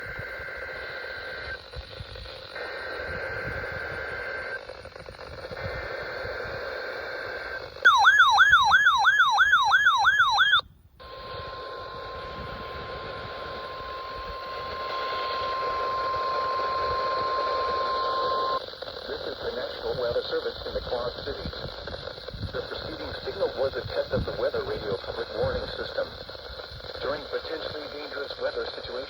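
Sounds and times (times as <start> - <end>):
screechy digital data bursts: 0.0 - 23.6
warbling electronic alarm: 2.5 - 18.7
steady alert tone: 7.9 - 10.6.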